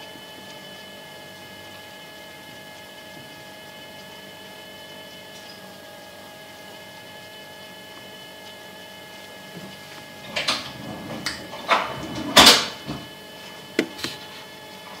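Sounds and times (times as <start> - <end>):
fridge humming: 5.2 - 15.0.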